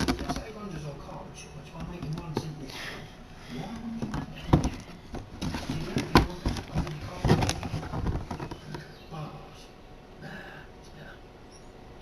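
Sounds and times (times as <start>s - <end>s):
cardboard rustling: 0.0s - 1.0s, 3.6s - 9.0s
knocks and thumps on cardboard: 4.0s - 8.8s.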